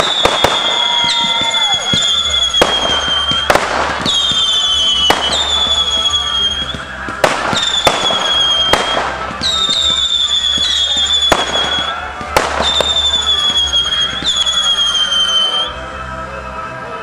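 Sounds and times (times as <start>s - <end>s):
firework shells bursting: 0.0s - 13.2s
firework crackle: 0.0s - 15.7s
firework whistles: 0.0s - 15.8s.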